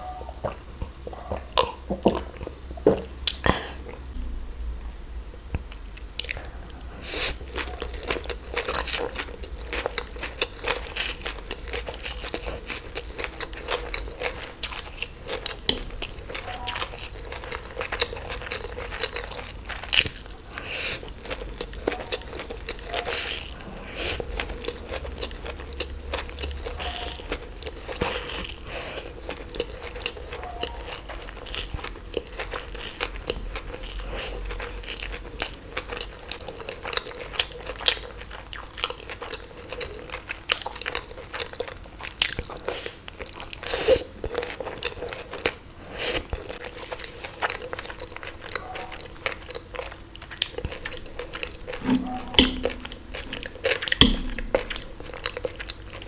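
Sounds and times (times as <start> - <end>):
crunchy bites and chewing: 6.2 - 56.0.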